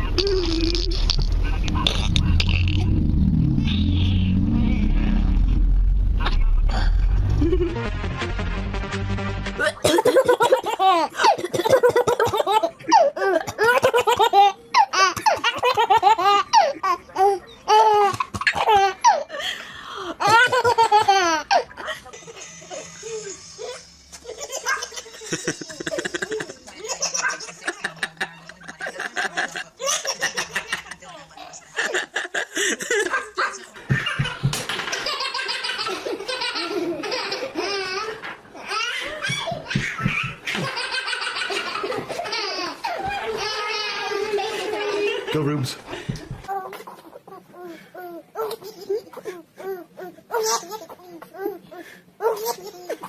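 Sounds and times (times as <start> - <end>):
baby laughing: 20.2 - 27.6, 31.8 - 45.3, 46.4 - 51.6, 52.2 - 53.0.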